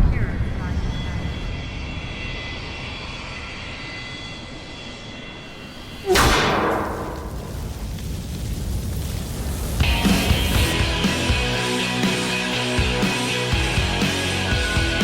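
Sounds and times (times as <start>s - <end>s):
loud hit with falling sweep: 6.0s - 8.0s
music: 9.8s - 15.0s.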